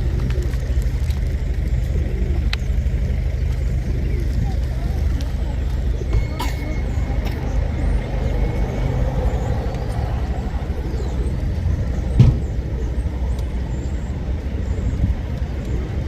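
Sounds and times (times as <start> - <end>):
low rumble of road traffic: 0.0 - 16.0
faint high bird chirps: 4.0 - 11.6
loud thump: 12.2 - 12.6.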